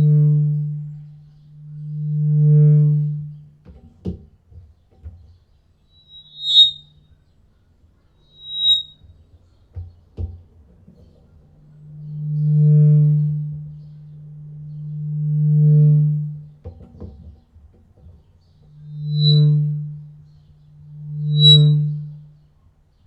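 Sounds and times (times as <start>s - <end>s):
high-pitched feedback squeals: 0.0s - 1.0s, 5.9s - 7.0s, 8.2s - 9.0s, 18.7s - 22.2s
low feedback howl: 0.0s - 3.5s, 6.0s - 7.0s, 8.3s - 9.0s, 11.7s - 16.6s, 18.7s - 22.4s.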